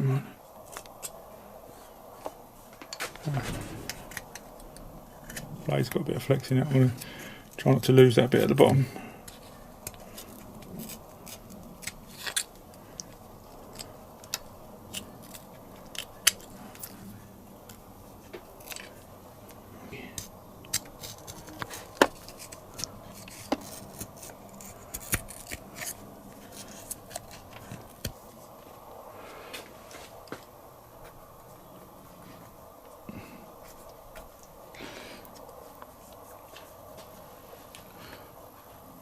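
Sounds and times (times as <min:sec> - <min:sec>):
knife scraping engine casing: 0:20.1 - 0:28.2.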